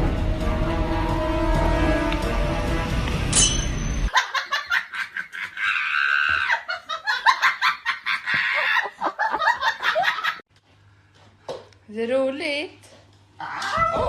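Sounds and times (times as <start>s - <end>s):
background music: 0.0s - 4.1s
person laughing: 4.2s - 10.4s.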